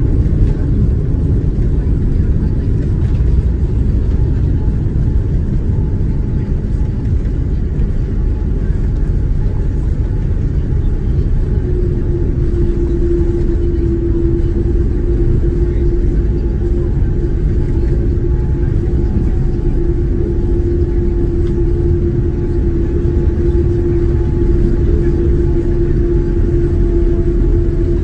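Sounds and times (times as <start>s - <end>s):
jet engine rumble: 0.0s - 28.0s
steady humming tone: 0.0s - 28.0s.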